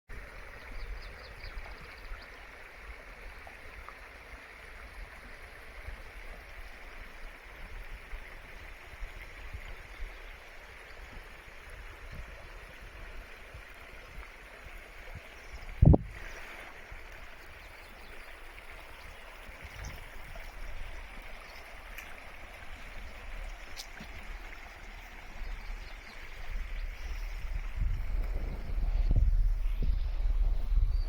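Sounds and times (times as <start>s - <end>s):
stream flowing: 0.1s - 31.0s
low rumble: 26.8s - 31.0s.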